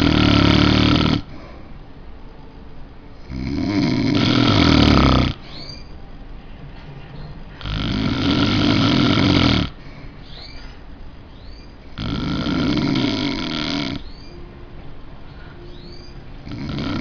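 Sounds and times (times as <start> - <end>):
man snoring: 0.0 - 1.3, 3.2 - 5.4, 7.6 - 9.8, 11.9 - 14.0, 16.4 - 17.0
quiet breathing: 0.0 - 6.2, 7.5 - 17.0.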